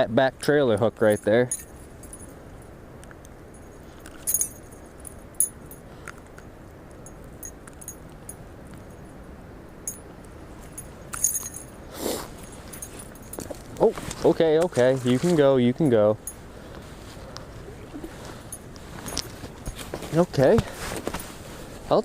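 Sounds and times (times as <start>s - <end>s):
metal fishing lure jingling: 1.0s - 2.4s, 3.5s - 5.9s, 7.0s - 9.2s, 9.8s - 11.8s.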